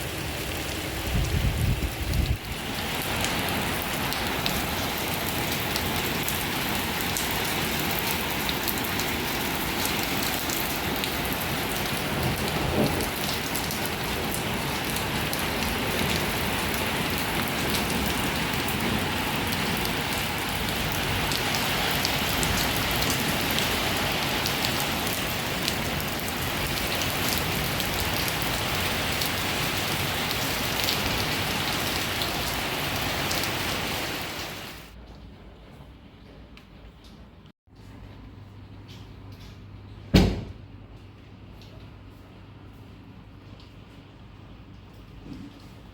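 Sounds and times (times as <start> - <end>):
heavy rain falling: 0.0 - 35.0.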